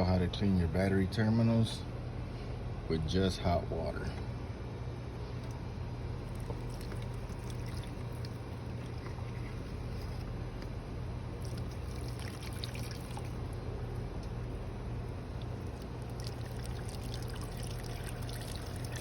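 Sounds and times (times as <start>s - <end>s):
steady low hum: 0.0s - 19.0s
water pouring and trickling: 6.2s - 10.3s, 11.3s - 19.0s
small ticks and splashes: 6.2s - 19.0s.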